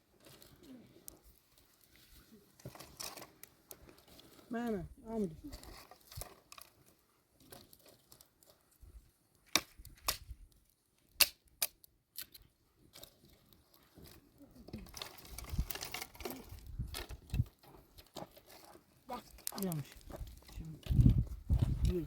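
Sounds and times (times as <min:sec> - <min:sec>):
rustling and scraping: 0:00.0 - 0:09.0, 0:12.8 - 0:22.0
sharp cracks and knocks: 0:09.4 - 0:13.1.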